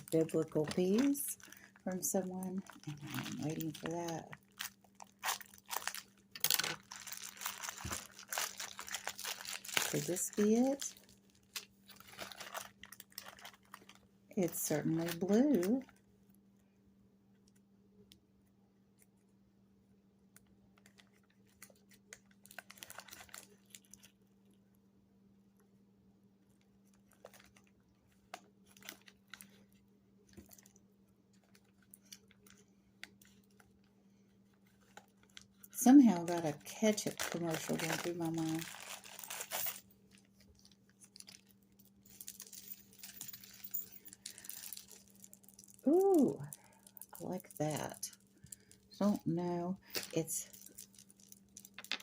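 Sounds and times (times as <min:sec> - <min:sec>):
jewelry clicks and wrapping rustles: 0:00.0 - 0:16.0, 0:20.8 - 0:24.2, 0:34.5 - 0:52.0
faint steady hum: 0:00.0 - 0:52.0.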